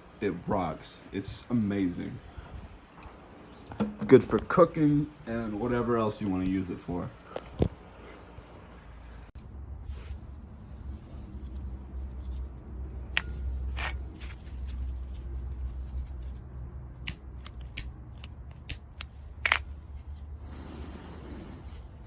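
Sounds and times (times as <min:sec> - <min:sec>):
low steady rumble: 0:00.0 - 0:22.0
sharp clicks and snaps: 0:16.9 - 0:19.7.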